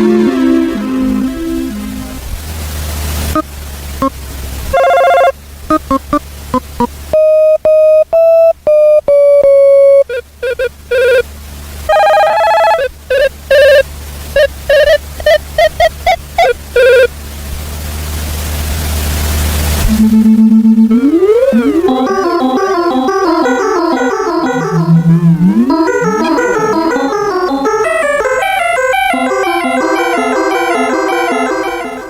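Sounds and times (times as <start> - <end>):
hiss with low rumble: 0.0 - 4.8, 10.1 - 27.8
stepped held electronic tones: 4.8 - 11.3, 11.9 - 17.1, 19.9 - 32.0
electronic ringing beeps: 19.9 - 32.0.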